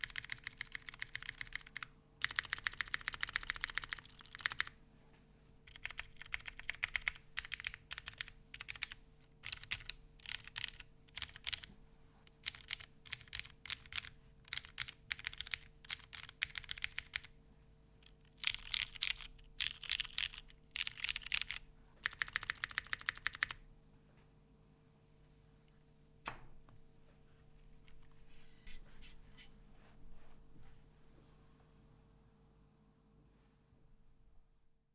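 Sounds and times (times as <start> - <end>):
mechanical keyboard typing: 0.0 - 4.8, 5.7 - 11.7, 12.3 - 17.3, 18.0 - 23.6.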